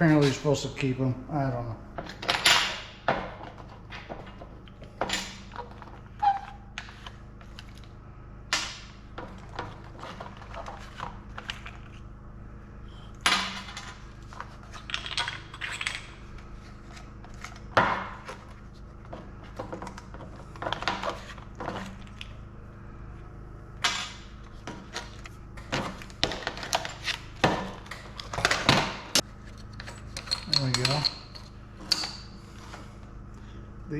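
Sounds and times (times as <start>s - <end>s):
metal parts knocking and clinking: 14.7s - 16.2s, 25.7s - 32.3s.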